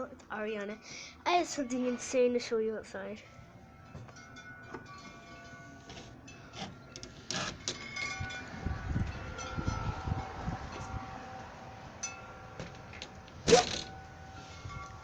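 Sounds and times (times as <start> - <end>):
wind chimes ringing: 1.5 - 15.0
wind buffeting microphone: 7.5 - 15.0.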